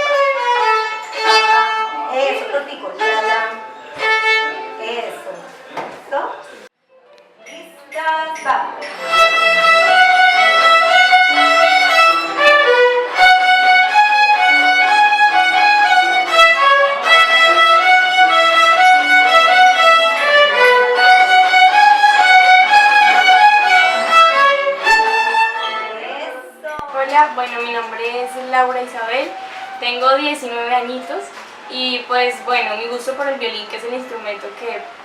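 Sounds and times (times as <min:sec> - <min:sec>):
violin music: 0:00.0 - 0:05.3, 0:08.8 - 0:26.6.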